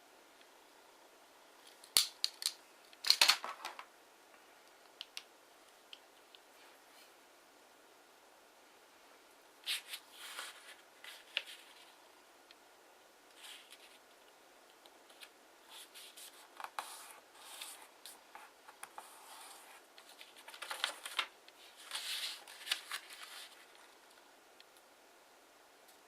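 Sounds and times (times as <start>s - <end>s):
paper folding and crinkling: 9.6s - 12.0s, 13.4s - 14.0s, 15.0s - 24.2s.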